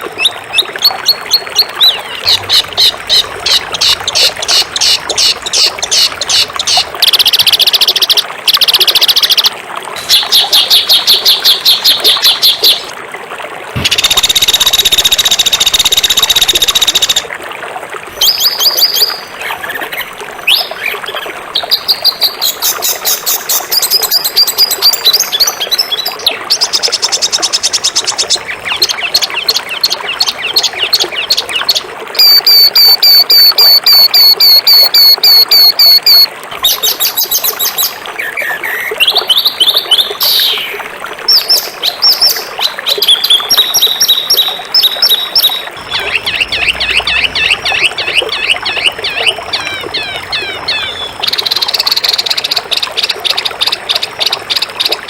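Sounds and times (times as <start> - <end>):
songbirds trilling and chirping: 0.2 - 12.9, 36.0 - 55.0.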